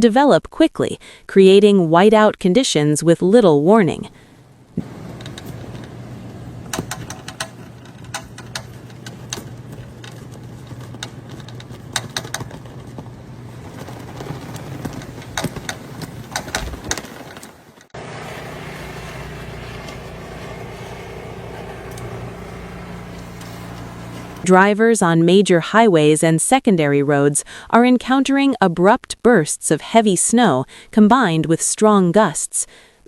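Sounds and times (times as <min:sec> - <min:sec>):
steady engine hum: 0:04.1 - 0:24.5
vehicle engine running: 0:04.5 - 0:16.4, 0:18.0 - 0:24.5.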